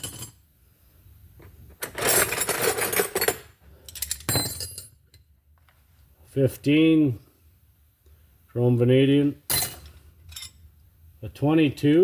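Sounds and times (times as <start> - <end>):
steel wrenches clattering: 1.8 - 4.9, 9.5 - 10.6.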